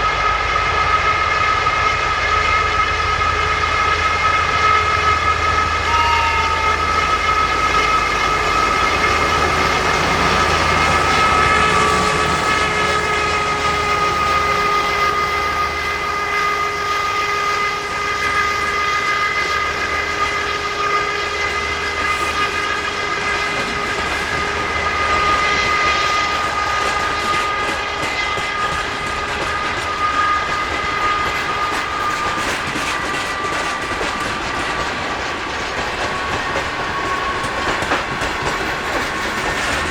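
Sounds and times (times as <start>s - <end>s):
locomotive whistling tone: 0.0s - 39.9s
train wheels rumbling and clattering: 0.0s - 39.9s.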